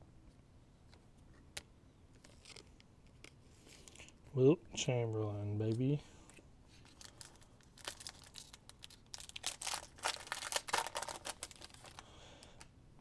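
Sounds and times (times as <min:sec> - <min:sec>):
cards and wrapper crinkling: 0:06.7 - 0:12.7.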